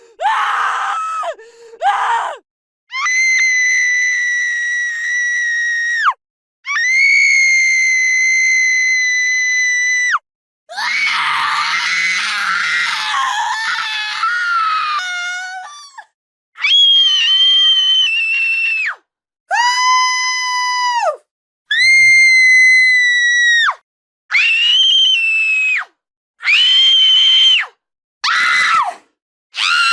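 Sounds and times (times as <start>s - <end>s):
woman screaming: 10.7s - 16.0s.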